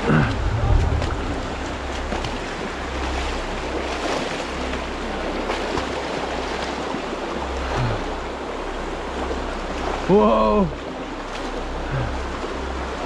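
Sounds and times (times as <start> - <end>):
wind rumbling on microphone: 0.0 - 8.3
river water rushing: 0.0 - 13.0.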